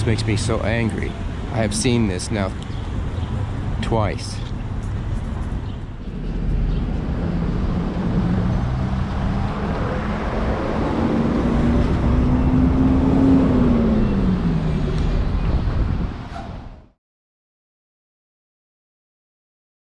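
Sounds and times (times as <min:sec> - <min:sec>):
vehicle engine: 0:00.0 - 0:16.8
low traffic rumble: 0:00.0 - 0:17.0.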